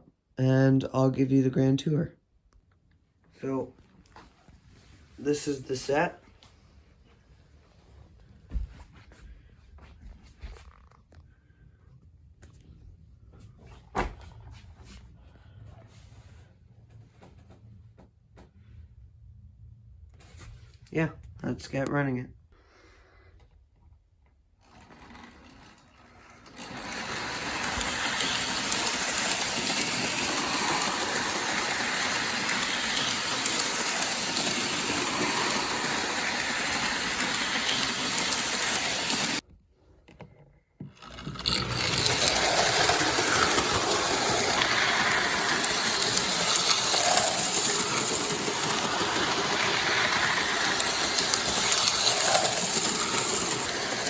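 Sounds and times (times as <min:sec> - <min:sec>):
toy train whirring on track: 0:05.2 - 0:06.2, 0:24.6 - 0:39.4, 0:41.0 - 0:54.0.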